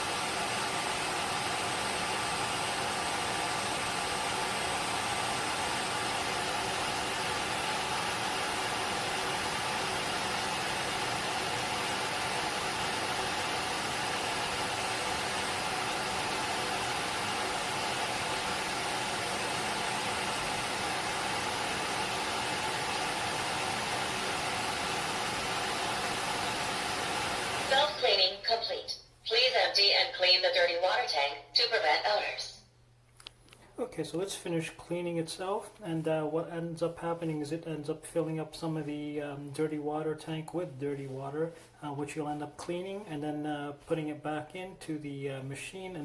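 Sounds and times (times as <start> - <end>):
floor cleaner motor blowing air: 0.0 - 28.3.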